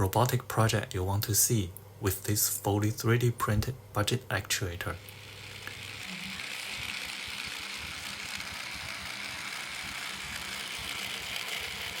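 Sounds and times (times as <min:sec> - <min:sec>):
robot actuator motor whirring: 0:05.0 - 0:12.0
rattly gear noise: 0:06.6 - 0:12.0.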